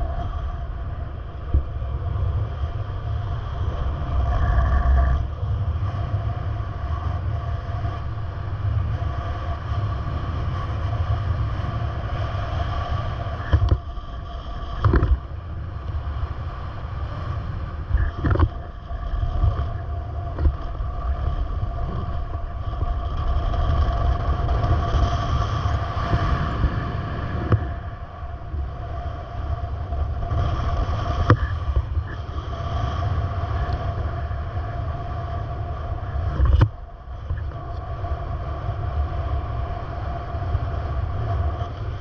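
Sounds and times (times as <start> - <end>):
vehicle running with low rumble: 0.0 - 42.0.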